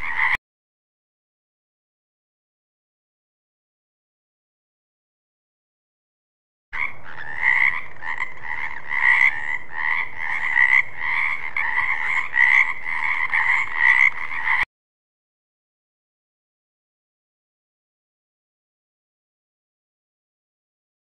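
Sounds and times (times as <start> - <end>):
frog croaking: 0.0 - 0.4, 6.8 - 14.7.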